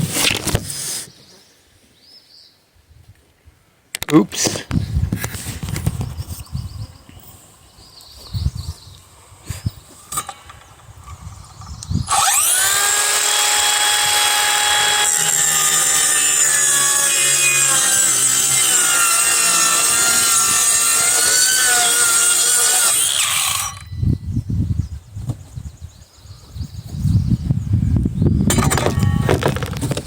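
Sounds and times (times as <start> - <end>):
power saw cutting wood: 12.1 - 23.9.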